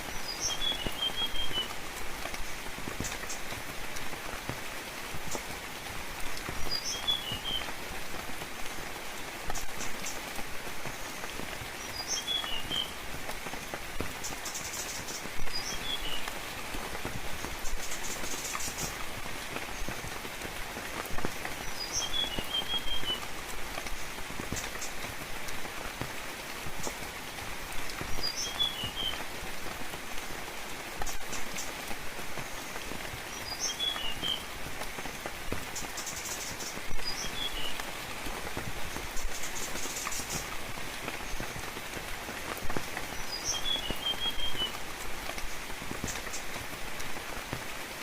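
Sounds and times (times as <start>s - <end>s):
songbird chirping: 0.0s - 3.6s, 6.4s - 7.8s, 10.9s - 13.6s, 14.2s - 16.4s, 21.6s - 25.1s, 27.9s - 29.3s, 32.4s - 34.5s, 35.7s - 38.0s, 43.1s - 46.6s
gentle rain falling: 0.0s - 48.0s.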